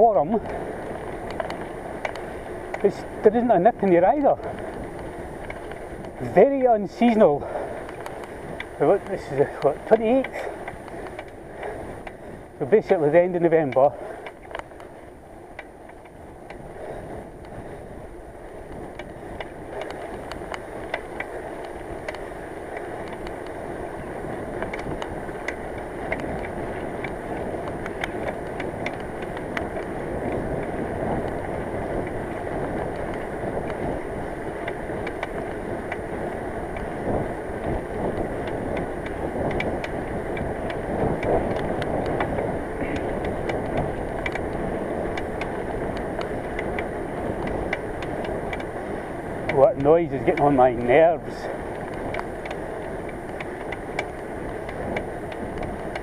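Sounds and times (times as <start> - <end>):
wind and bicycle tyre noise: 0.0 - 56.0.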